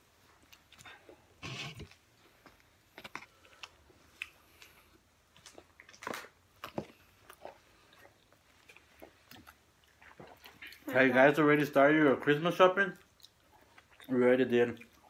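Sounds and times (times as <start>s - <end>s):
chewing and mouth smacks: 1.9s - 11.0s, 13.0s - 15.0s.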